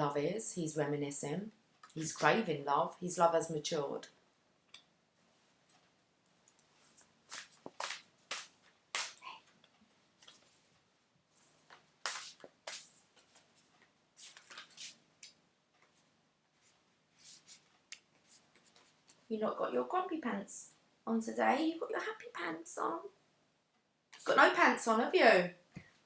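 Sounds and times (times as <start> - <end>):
cards shuffled and sliding: 7.0 - 9.2, 11.5 - 13.5, 14.2 - 15.4.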